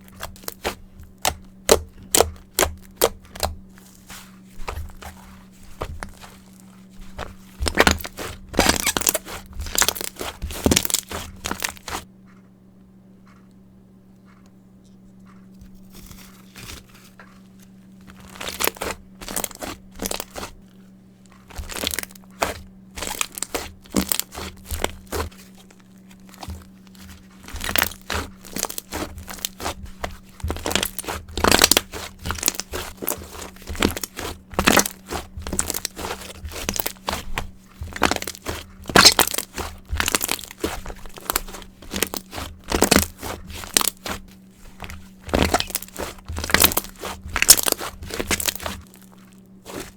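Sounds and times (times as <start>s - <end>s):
faint low hum: 0.0s - 49.9s
slime popping and crackling: 0.2s - 5.2s, 7.1s - 12.0s, 18.2s - 20.5s, 21.5s - 25.4s, 26.3s - 49.1s.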